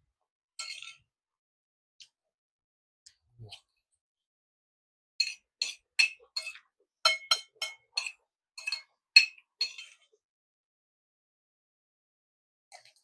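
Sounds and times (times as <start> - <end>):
cutlery clinking on plate: 5.2 - 9.9.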